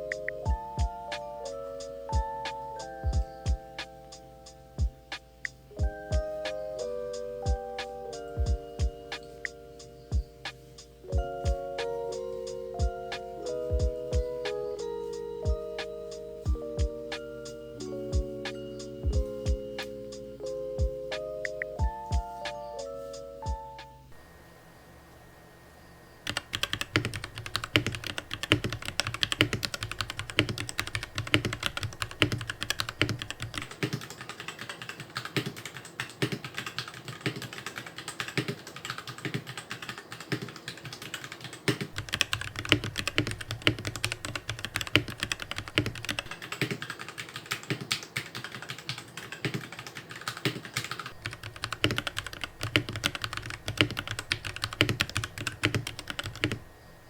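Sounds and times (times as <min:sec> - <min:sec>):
typing on computer keyboard: 0:26.3 - 0:56.6.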